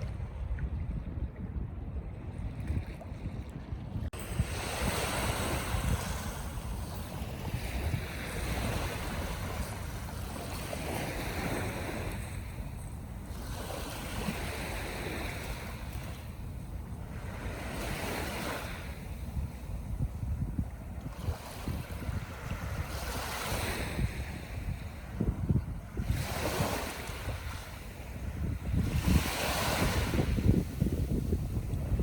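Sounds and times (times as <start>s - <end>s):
wind buffeting microphone: 0.0s - 32.0s
sea waves breaking on shore: 2.2s - 32.0s.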